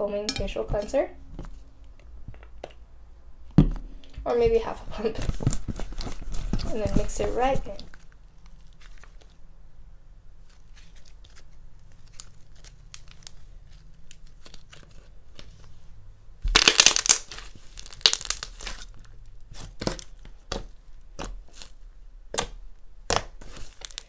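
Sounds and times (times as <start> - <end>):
slime stirred sticky crackling: 0.1 - 9.6, 10.3 - 24.0.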